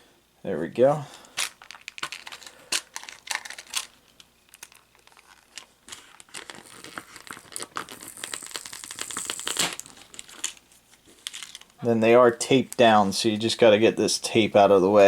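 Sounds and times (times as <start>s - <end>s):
plastic packaging crinkling: 1.2s - 11.8s.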